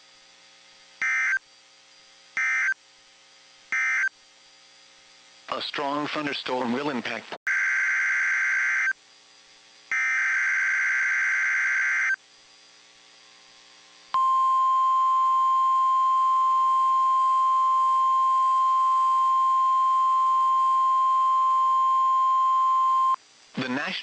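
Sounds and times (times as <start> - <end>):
steady warning alarm tone: 1.0 - 1.4, 2.4 - 2.8, 3.7 - 4.1, 7.5 - 9.0, 9.9 - 12.2, 14.2 - 23.2
screeching digital data bursts: 9.9 - 12.2.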